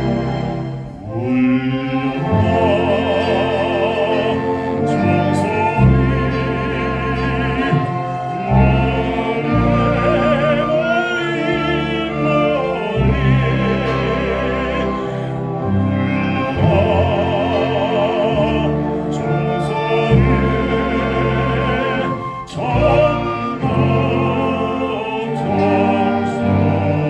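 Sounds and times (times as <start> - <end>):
baritone operatic singing: 0.0 - 27.0
full orchestra: 0.0 - 27.0.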